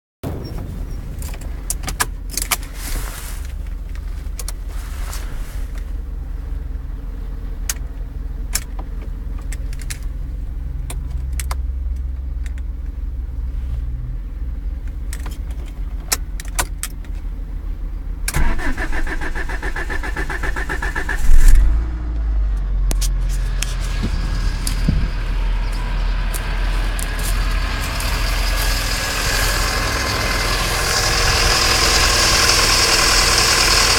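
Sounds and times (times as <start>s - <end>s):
car engine starting and idling: 0.3s - 33.9s
starter motor cranking: 18.3s - 21.7s, 23.9s - 33.9s.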